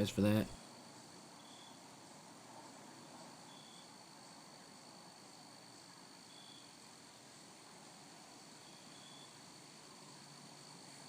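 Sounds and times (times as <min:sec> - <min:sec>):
short insect chirp: 0:00.7 - 0:02.4, 0:03.0 - 0:11.0
high-pitched insect drone: 0:03.5 - 0:06.8.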